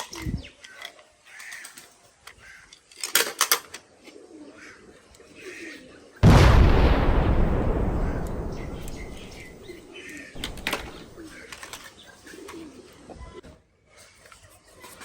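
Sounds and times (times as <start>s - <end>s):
birds chirping and cooing: 0.0s - 2.9s, 3.7s - 6.2s, 8.0s - 13.4s
echo of a loud bang: 6.2s - 11.4s
sharp clicks: 6.2s - 11.5s.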